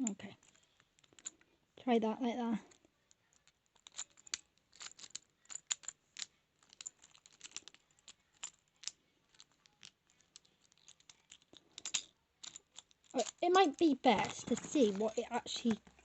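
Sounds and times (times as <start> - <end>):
lock pick clicking and scraping: 3.4 - 13.4.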